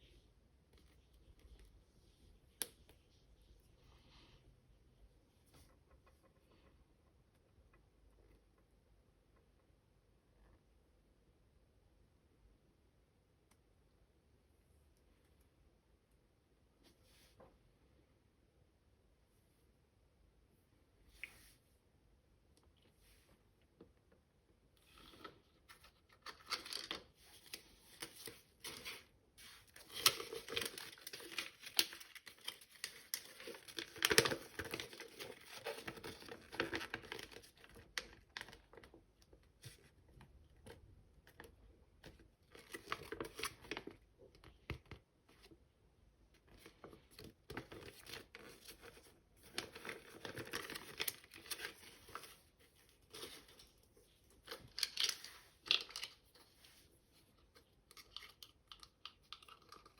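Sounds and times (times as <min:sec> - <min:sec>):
packaging crinkling and tearing: 0:29.7 - 0:38.8, 0:47.5 - 0:52.4, 0:54.4 - 0:56.2.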